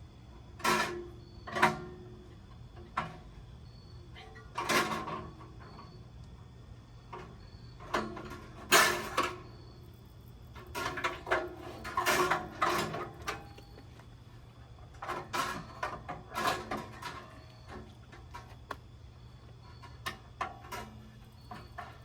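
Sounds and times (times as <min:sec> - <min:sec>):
metal grill parts clanking and rattling: 0:00.6 - 0:02.2, 0:04.5 - 0:06.1, 0:07.1 - 0:09.5, 0:10.5 - 0:13.8, 0:14.8 - 0:18.6, 0:19.7 - 0:22.0.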